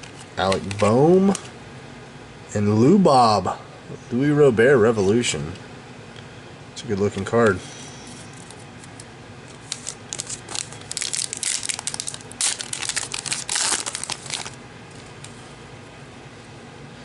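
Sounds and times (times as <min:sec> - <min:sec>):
plastic wrapper tearing and crinkling: 0:08.4 - 0:14.6.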